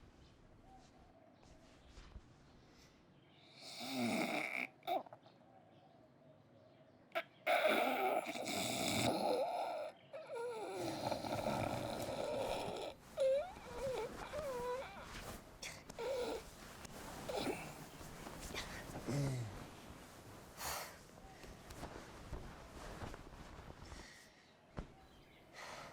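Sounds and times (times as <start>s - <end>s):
person snoring loudly: 3.6s - 5.0s, 7.5s - 14.9s.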